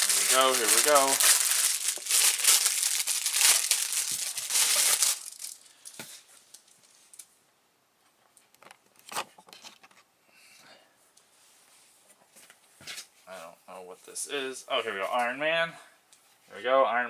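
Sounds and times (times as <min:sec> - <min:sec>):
packaging tearing and crinkling: 0:00.0 - 0:05.8
soft rustles and light taps: 0:11.1 - 0:14.2.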